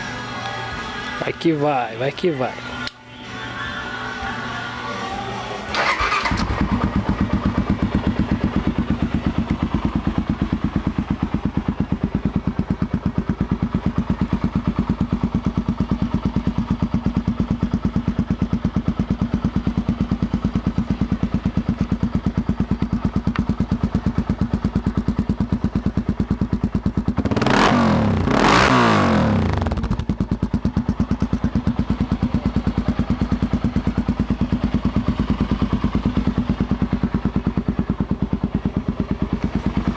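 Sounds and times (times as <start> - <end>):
motorcycle engine idling and revving: 0.0 - 39.9.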